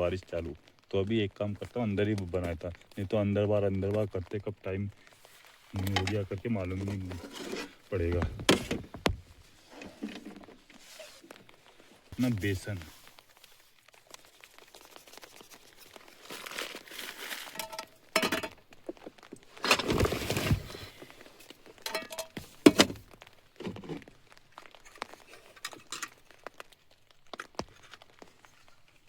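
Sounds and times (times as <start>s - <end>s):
plastic packaging crinkling: 4.9s - 29.0s
utensils clinking: 17.4s - 18.6s, 21.9s - 23.0s.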